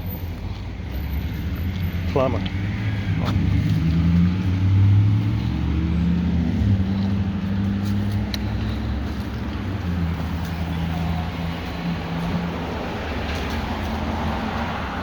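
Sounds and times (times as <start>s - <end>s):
vehicle engine running: 0.3s - 14.0s.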